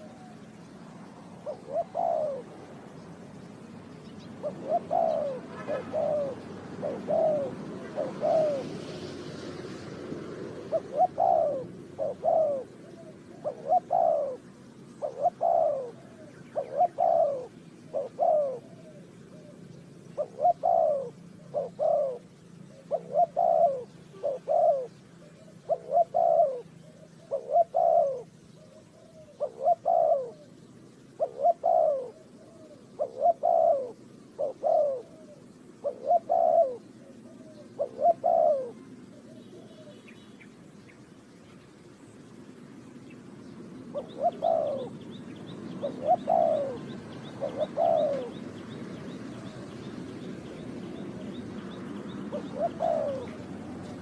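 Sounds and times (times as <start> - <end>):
dove cooing: 0.0 - 40.4, 43.2 - 54.0.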